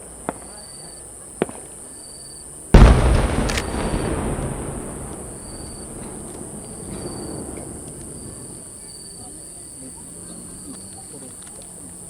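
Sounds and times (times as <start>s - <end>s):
crickets chirring: 1.9s - 12.0s
firework boom: 2.8s - 8.8s.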